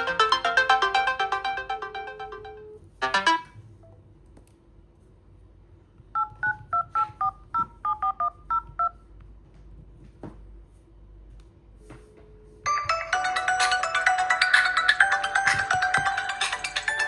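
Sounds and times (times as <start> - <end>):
phone ringtone melody: 0.0 - 3.6, 12.7 - 17.0
touch-tone dial beeps: 6.2 - 9.0.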